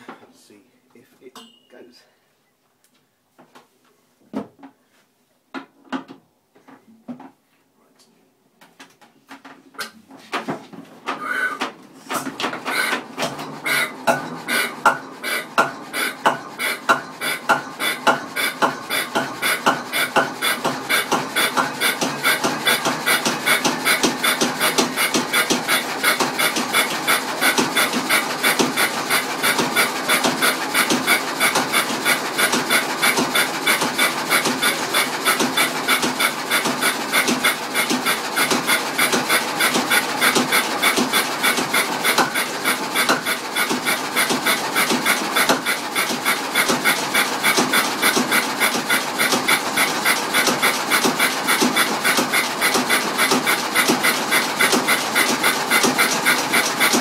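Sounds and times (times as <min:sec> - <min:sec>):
petrol engine misfiring: 0:12.2 - 0:57.0.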